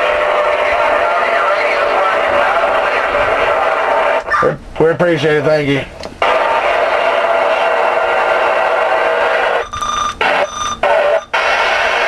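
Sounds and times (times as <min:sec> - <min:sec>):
radio static hiss: 0:00.0 - 0:12.0
short beeping tones: 0:09.6 - 0:11.4.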